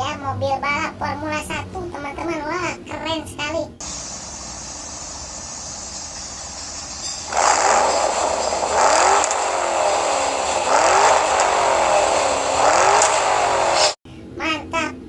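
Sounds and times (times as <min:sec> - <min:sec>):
toy race car engine revving: 0:07.2 - 0:14.0.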